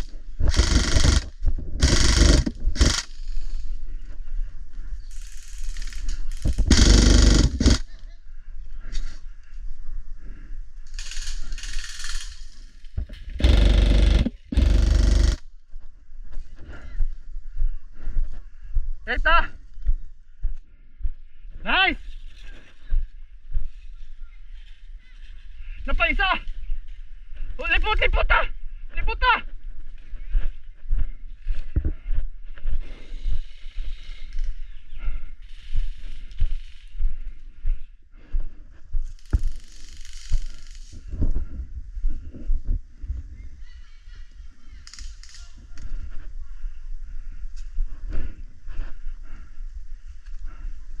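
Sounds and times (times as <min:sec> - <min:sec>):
airsoft rifle full-auto bursts: 0:00.0 - 0:03.2, 0:06.5 - 0:07.9, 0:13.1 - 0:15.4.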